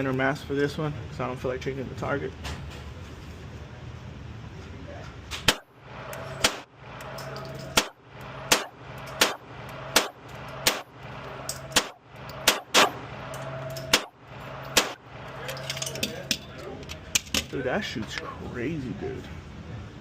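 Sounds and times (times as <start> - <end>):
steady low hum: 0.0 - 20.0
pistol shots: 5.4 - 5.7, 6.4 - 6.7, 7.7 - 11.0, 11.7 - 13.0, 13.8 - 15.0.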